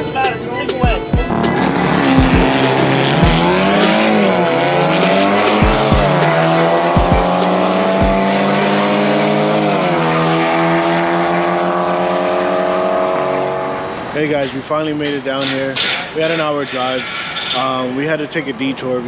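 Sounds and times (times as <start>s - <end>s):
dull thumps: 0.0s - 4.6s, 5.4s - 8.4s
car engine accelerating: 0.0s - 14.2s.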